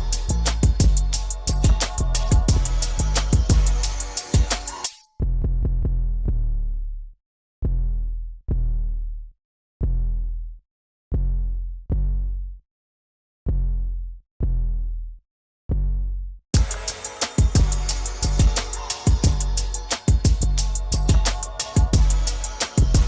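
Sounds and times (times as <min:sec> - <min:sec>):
deep bass booms: 0:00.0 - 0:04.6, 0:05.2 - 0:06.8, 0:15.7 - 0:23.0
hip-hop beat: 0:00.0 - 0:05.0, 0:16.6 - 0:23.0.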